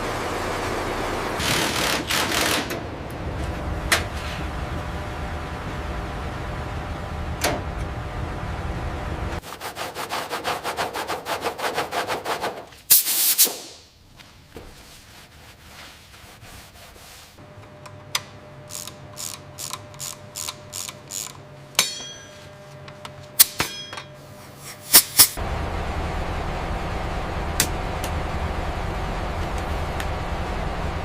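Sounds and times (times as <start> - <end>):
loud hiss burst: 12.9 - 13.9
steady hum: 17.4 - 31.0.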